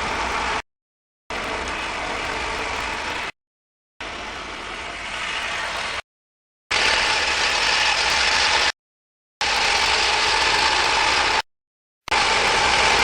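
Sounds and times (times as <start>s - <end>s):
snowblower engine running: 0.0s - 0.6s, 1.3s - 3.3s, 4.0s - 6.0s, 6.7s - 8.7s, 9.4s - 11.4s, 12.1s - 13.0s.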